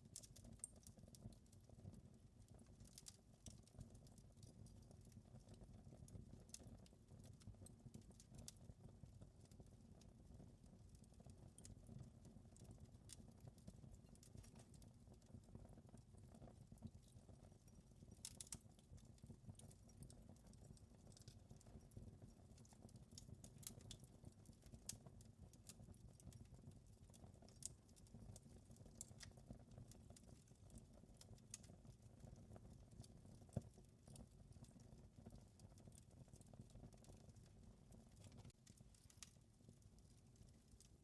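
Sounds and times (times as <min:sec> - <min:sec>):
wood fire crackling: 0:00.0 - 0:41.0
fire pops and snaps: 0:00.2 - 0:00.9, 0:16.1 - 0:17.2, 0:18.1 - 0:21.9, 0:22.5 - 0:26.4, 0:27.5 - 0:37.3, 0:37.9 - 0:39.3.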